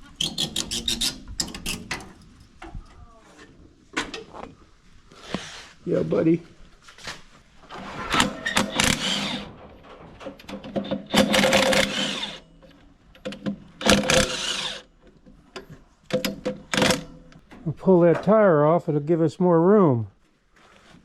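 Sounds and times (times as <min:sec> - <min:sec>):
impact wrench hammering: 0:10.7 - 0:12.4, 0:13.3 - 0:14.8.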